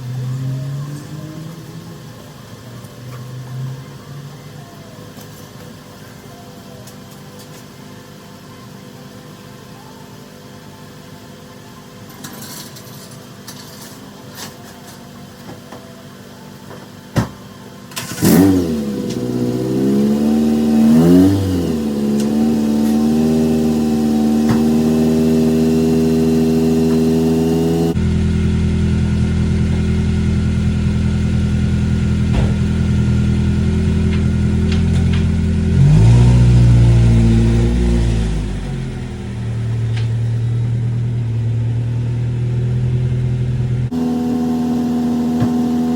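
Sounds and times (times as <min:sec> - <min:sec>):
car engine revving: 0:00.0 - 0:04.5, 0:17.9 - 0:45.9
car engine starting and idling: 0:00.0 - 0:09.8, 0:10.4 - 0:45.9.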